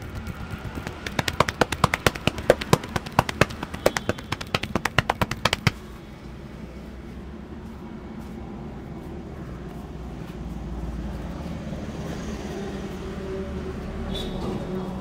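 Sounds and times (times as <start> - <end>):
hands slapping on a head: 0.7 - 5.8.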